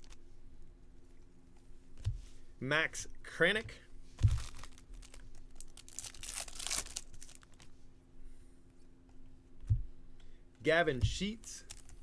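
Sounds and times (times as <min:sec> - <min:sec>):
cards and packaging crinkling: 0:04.2 - 0:07.7, 0:11.2 - 0:12.0.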